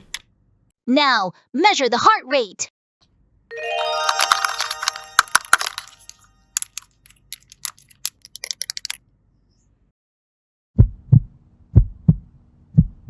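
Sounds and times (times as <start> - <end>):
plastic toy tools clicking: 0.0 - 0.2, 4.0 - 9.0.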